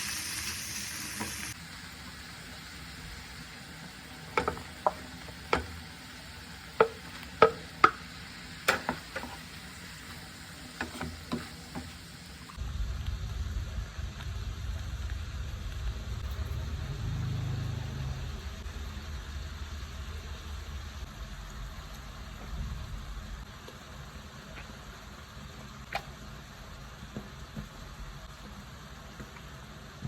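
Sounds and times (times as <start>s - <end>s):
food sizzling in a pan: 0.0s - 30.0s
utensil knocking against pan: 4.4s - 5.8s, 6.8s - 8.1s.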